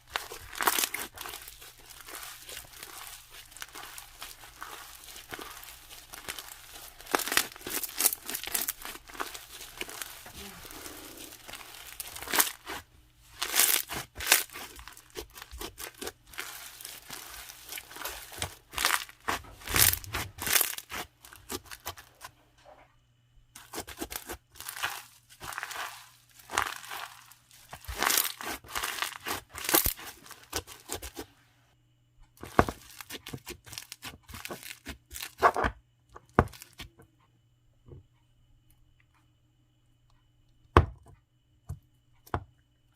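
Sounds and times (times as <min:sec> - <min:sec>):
slime squishing and popping: 0:00.0 - 0:22.1, 0:23.6 - 0:31.2.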